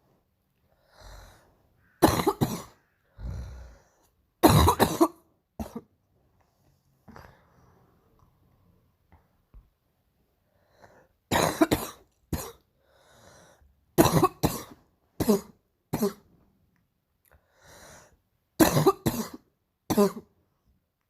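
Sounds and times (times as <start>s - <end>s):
girl barking cough: 2.0s - 2.8s, 4.4s - 5.9s, 11.3s - 12.6s, 14.0s - 16.2s, 18.6s - 20.3s
girl breathing in: 17.4s - 18.2s.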